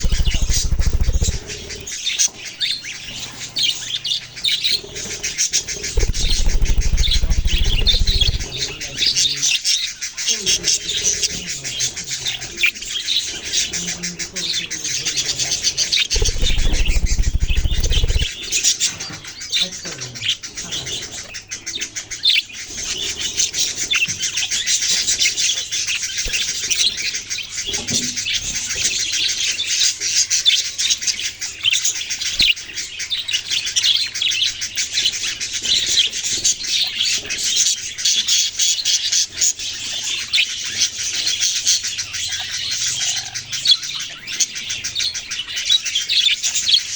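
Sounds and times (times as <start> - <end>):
parrots chirping and twittering: 0.0 - 46.9
loud low rumble: 5.9 - 8.6, 16.2 - 18.3.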